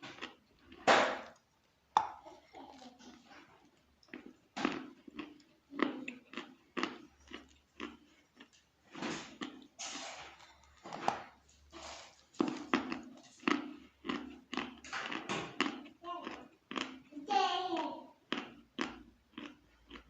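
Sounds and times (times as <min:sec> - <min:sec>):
soft chewing: 0:00.0 - 0:20.0
chalk crunching: 0:11.5 - 0:13.6.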